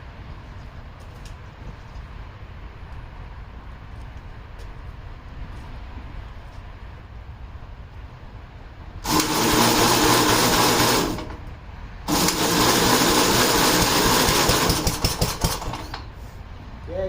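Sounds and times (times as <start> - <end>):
engine cranked by starter: 9.0 - 16.2.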